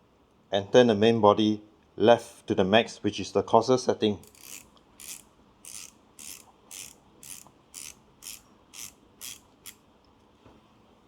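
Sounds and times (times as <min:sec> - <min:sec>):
coffee grinder ratcheting clicks: 0:04.2 - 0:09.8.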